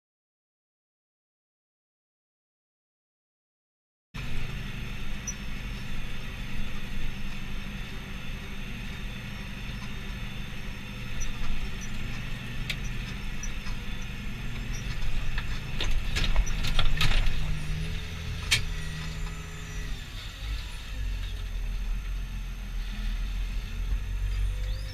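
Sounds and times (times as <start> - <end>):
deeper steady engine note: 4.2 - 24.9
tractor diesel engine running: 4.2 - 24.9
sharp knocks and rattles: 11.2 - 17.6.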